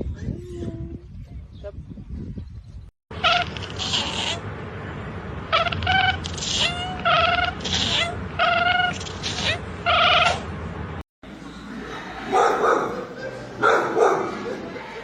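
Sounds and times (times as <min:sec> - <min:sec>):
cat meowing: 0:05.5 - 0:10.4.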